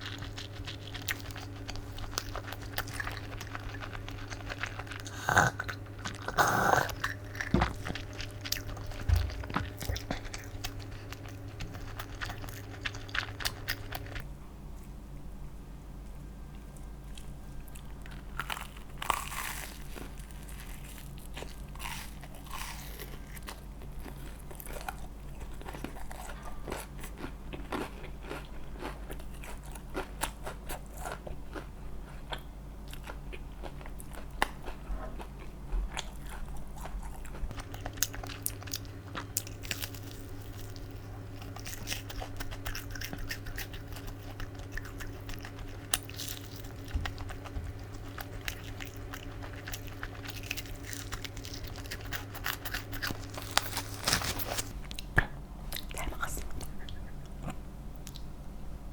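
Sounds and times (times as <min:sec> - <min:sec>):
chewing crunchy food: 0:00.0 - 0:15.0, 0:16.5 - 0:58.4
low hum: 0:00.0 - 0:24.1.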